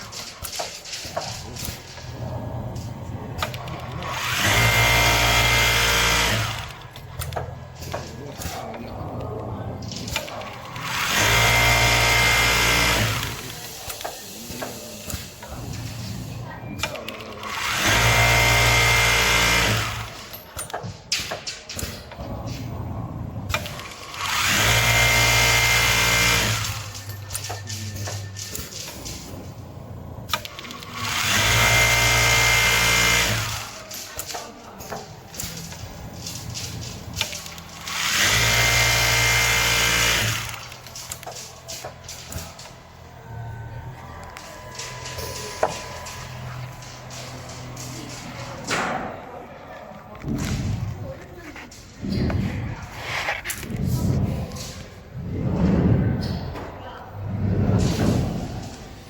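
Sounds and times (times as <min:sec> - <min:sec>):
sewing machine whirring: 0:00.0 - 0:08.7, 0:09.8 - 0:20.6, 0:23.5 - 0:48.7.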